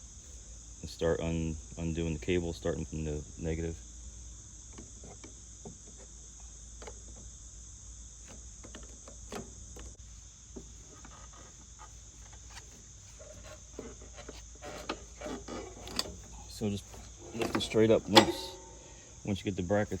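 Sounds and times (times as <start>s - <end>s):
insects chirring: 0.0s - 20.0s
wrench clicking on bolt: 17.2s - 18.8s.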